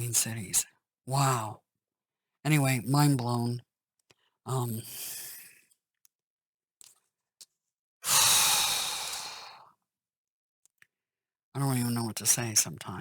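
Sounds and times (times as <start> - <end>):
long breathy sigh: 8.0 - 9.7.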